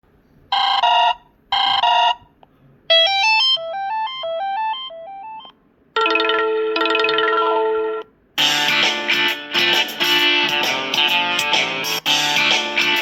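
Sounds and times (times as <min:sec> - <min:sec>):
phone ringtone: 0:00.6 - 0:02.2, 0:02.9 - 0:08.1
beeping tones: 0:02.9 - 0:08.0.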